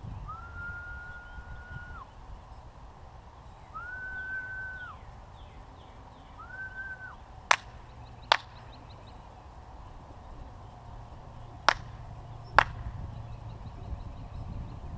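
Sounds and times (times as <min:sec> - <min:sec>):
whistled note: 0:00.2 - 0:02.2, 0:03.6 - 0:05.1, 0:06.4 - 0:07.2
sharp cracks: 0:06.4 - 0:13.4.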